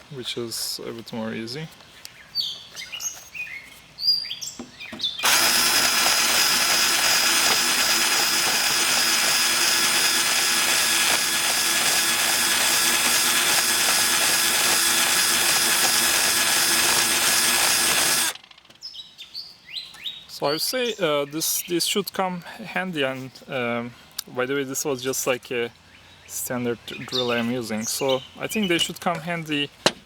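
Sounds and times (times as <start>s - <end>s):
birds chirping: 0.0s - 17.5s, 24.8s - 29.9s
power drill rasping wood: 5.2s - 18.4s.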